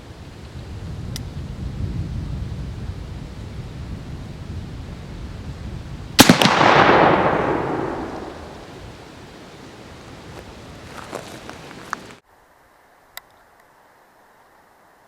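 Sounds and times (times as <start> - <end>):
rifle shot: 6.2 - 9.0
sharp crack: 6.2 - 9.2.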